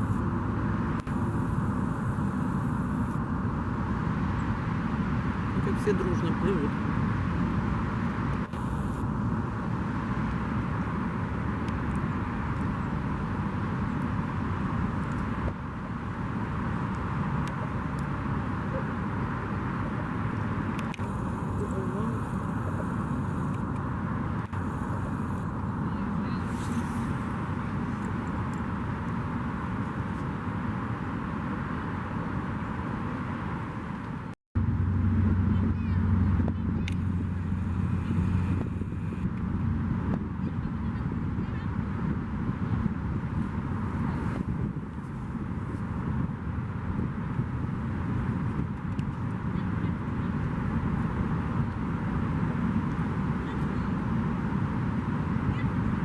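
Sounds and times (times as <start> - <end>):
steady outdoor rumble: 0.0 - 56.0
wind buffeting microphone: 34.6 - 56.0.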